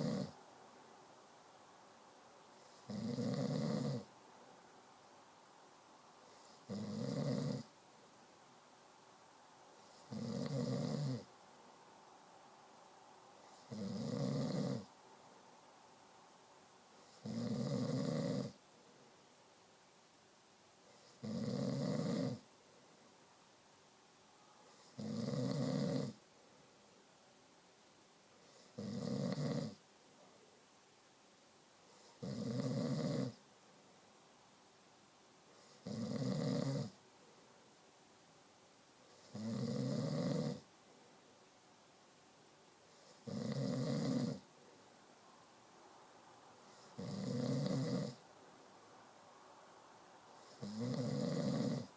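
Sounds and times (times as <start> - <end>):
person snoring: 0.0 - 0.4, 2.6 - 4.1, 6.3 - 7.7, 9.9 - 11.3, 13.6 - 14.9, 17.1 - 18.6, 21.0 - 22.4, 25.0 - 26.2, 28.6 - 29.8, 32.0 - 33.4, 35.6 - 37.0, 39.2 - 40.6, 43.0 - 44.4, 46.8 - 48.2, 50.4 - 51.9.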